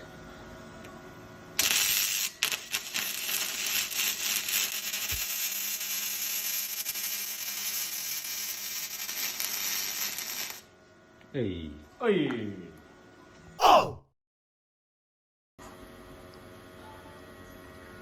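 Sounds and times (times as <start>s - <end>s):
arc welding crackling: 1.6s - 10.7s.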